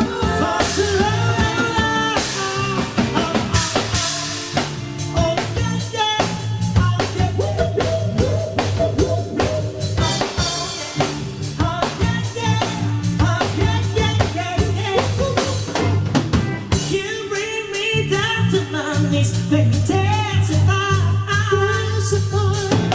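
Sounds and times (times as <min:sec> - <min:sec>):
person singing: 0:00.0 - 0:16.0, 0:16.8 - 0:22.9.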